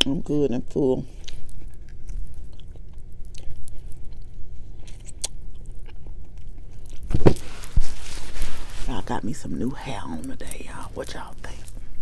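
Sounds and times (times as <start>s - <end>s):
chewing food: 1.0s - 7.1s.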